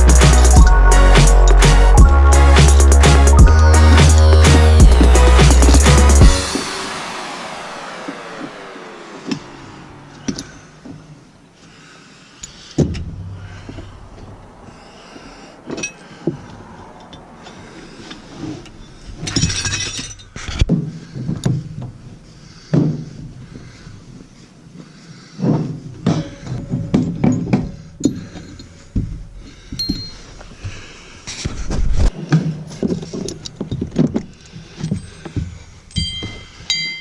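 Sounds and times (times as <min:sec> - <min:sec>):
metal tools clanking: 0:17.0 - 0:20.6, 0:26.0 - 0:29.0, 0:29.7 - 0:30.4, 0:32.8 - 0:37.0.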